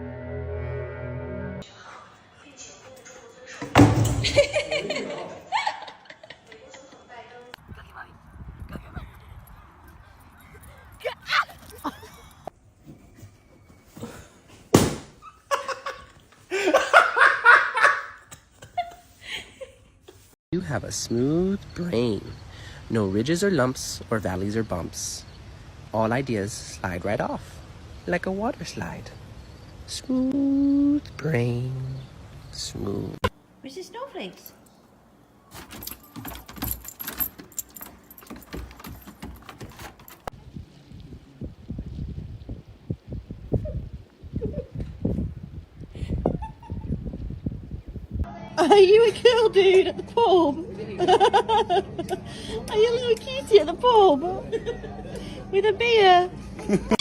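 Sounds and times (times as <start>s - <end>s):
person laughing: 11.6s - 12.4s, 15.3s - 20.2s, 46.0s - 47.0s
metallic jingling and clinking: 35.5s - 40.3s.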